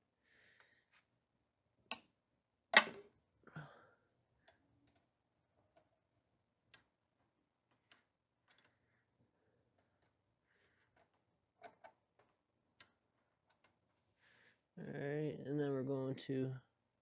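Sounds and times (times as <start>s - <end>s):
bolt cracking loose: 2.8s - 3.0s.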